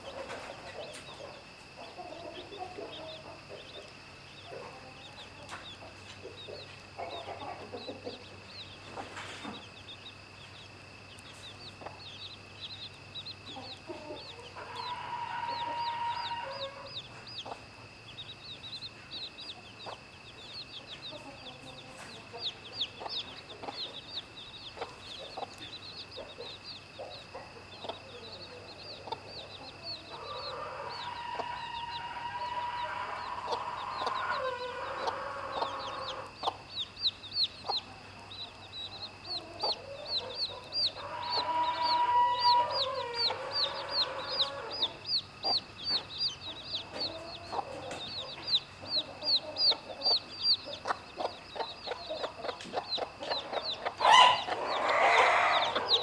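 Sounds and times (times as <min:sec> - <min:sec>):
hen clucking: 0:00.0 - 0:09.6, 0:20.8 - 0:56.0
chicks peeping: 0:00.0 - 0:56.0.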